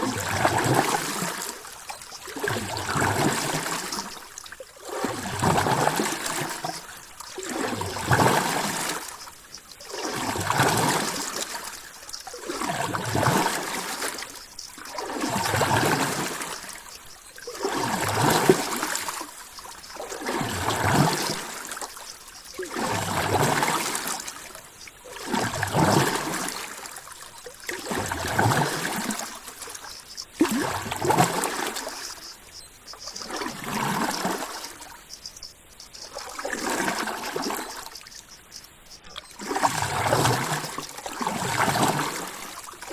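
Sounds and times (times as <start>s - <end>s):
rushing water surges: 9.9s - 16.8s, 17.4s - 27.1s, 39.3s - 42.9s.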